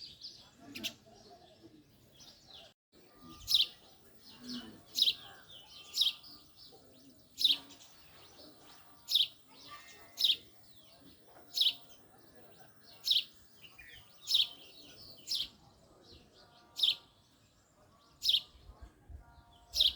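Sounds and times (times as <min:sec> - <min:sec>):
sparrow chirping: 0:00.0 - 0:19.9.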